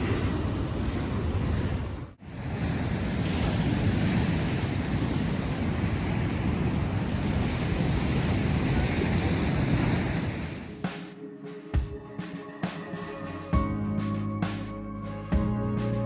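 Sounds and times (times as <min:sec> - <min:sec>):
wind buffeting microphone: 0:00.0 - 0:10.8
surf: 0:00.0 - 0:16.0.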